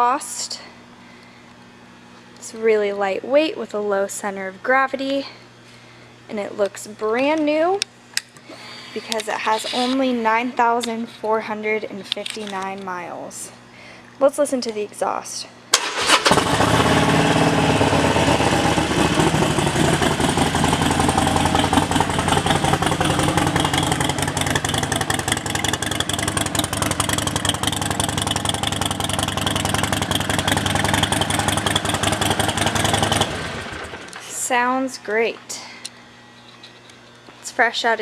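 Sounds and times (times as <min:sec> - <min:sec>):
motorcycle engine idling: 0:16.3 - 0:34.1.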